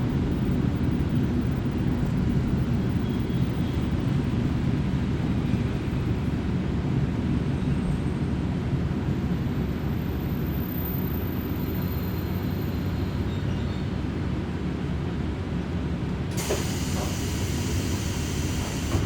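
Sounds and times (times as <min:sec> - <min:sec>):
train engine and wheels rumbling: 0:00.0 - 0:19.0.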